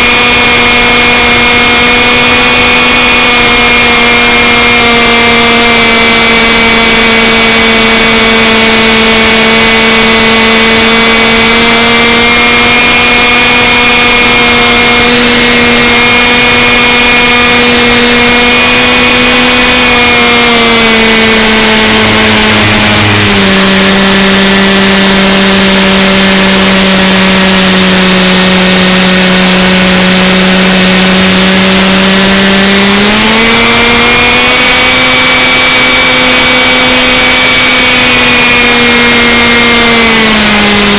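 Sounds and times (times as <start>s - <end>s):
engine droning: 0.0s - 40.9s.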